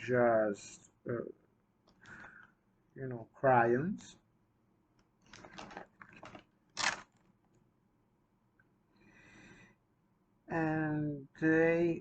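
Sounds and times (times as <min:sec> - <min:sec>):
box of crayons rattling: 0:05.3 - 0:07.2.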